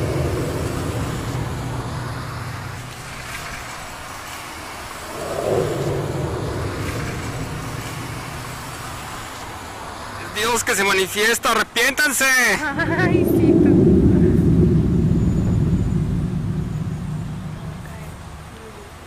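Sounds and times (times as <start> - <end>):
steady low hum: 0.0 - 10.4, 12.6 - 19.0
low droning sound from the sky: 0.0 - 10.8, 12.4 - 19.0.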